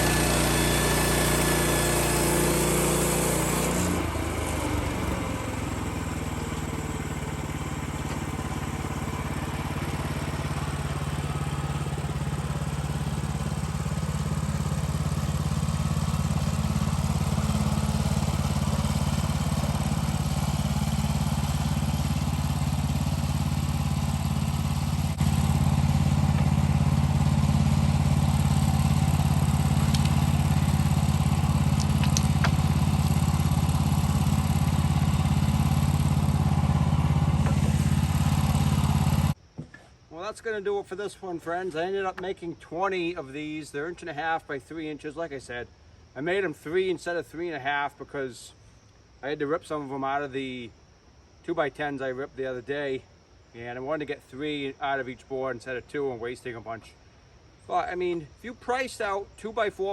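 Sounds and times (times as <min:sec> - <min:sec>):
gas engine running: 0:00.0 - 0:39.4
rough hissing: 0:07.6 - 0:39.4.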